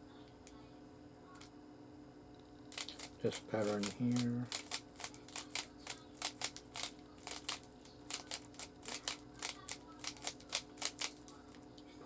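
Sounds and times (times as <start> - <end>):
puzzle cube plastic clicks: 2.7 - 11.3.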